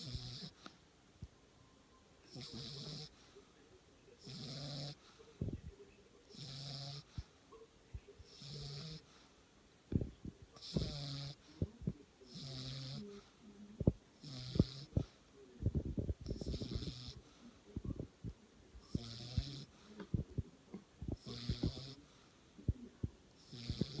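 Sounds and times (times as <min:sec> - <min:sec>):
person snoring: 0:00.0 - 0:00.7, 0:02.3 - 0:03.2, 0:04.2 - 0:05.1, 0:06.3 - 0:07.2, 0:08.3 - 0:09.1, 0:10.0 - 0:11.7, 0:12.3 - 0:18.0, 0:18.9 - 0:20.3, 0:21.1 - 0:22.2, 0:23.4 - 0:24.0.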